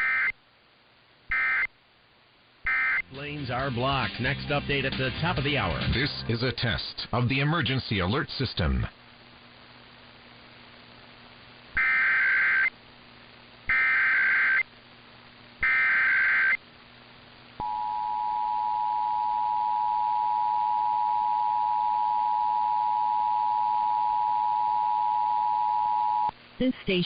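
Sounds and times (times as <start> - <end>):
screeching data tone bursts: 0.0 - 0.4, 1.3 - 1.7, 2.7 - 3.1, 11.8 - 12.7, 13.7 - 14.7, 15.6 - 16.6.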